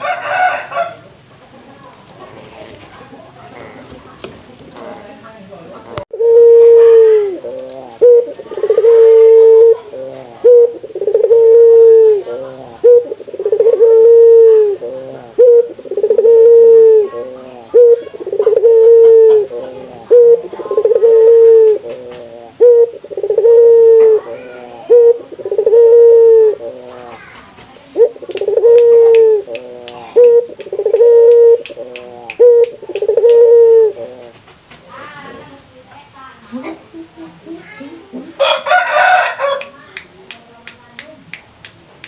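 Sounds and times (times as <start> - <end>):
dove cooing: 5.8 - 35.8.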